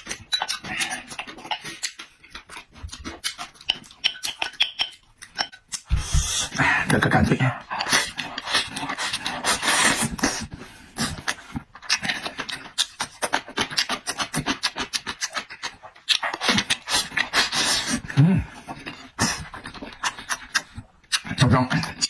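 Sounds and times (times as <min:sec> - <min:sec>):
crunchy chewing: 0:00.0 - 0:05.8.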